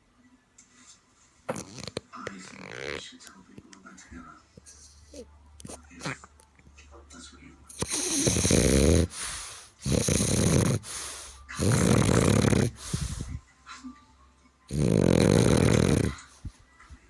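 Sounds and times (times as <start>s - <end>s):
dog snoring: 1.5s - 3.0s, 4.9s - 6.3s, 7.7s - 13.4s, 14.7s - 16.3s.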